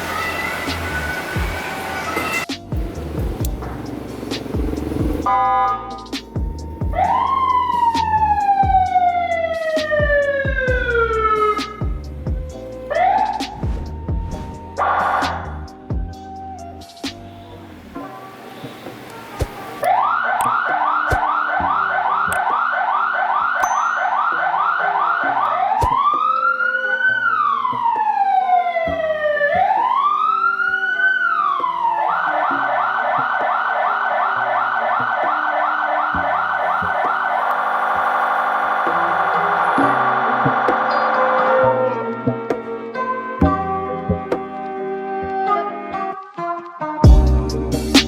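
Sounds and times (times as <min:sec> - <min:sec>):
electronic vehicle siren: 0:00.0 - 0:42.6
background music: 0:00.0 - 0:48.0.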